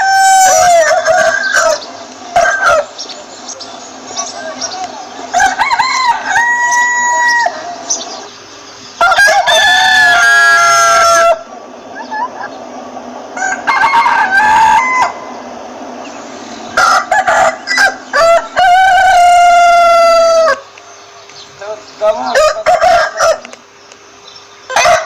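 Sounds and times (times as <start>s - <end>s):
rooster crowing: 0.0s - 3.0s, 5.0s - 8.3s, 9.0s - 15.9s, 16.6s - 21.2s, 22.2s - 23.6s, 24.7s - 25.0s
hens clucking: 0.0s - 23.7s.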